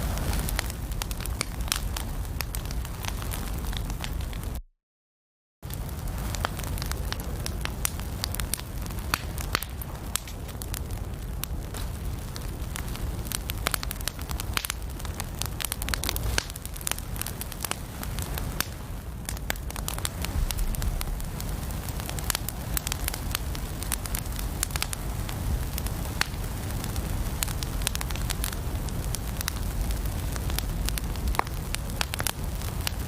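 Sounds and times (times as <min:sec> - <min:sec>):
wood fire crackling: 0:00.0 - 0:04.6, 0:05.6 - 0:33.0.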